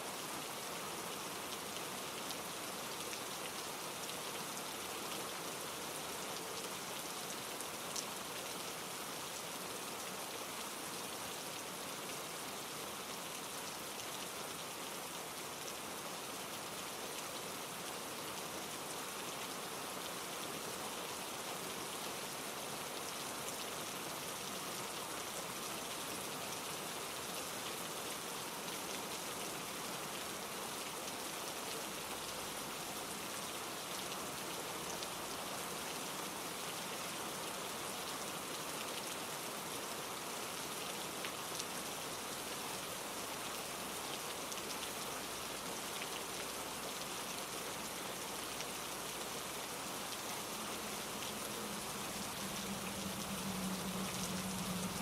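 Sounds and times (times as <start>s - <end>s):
heavy rain on leaves and rocks: 0.0s - 55.0s
wind through trees: 0.0s - 55.0s
stream tumbling over rocks: 21.3s - 55.0s.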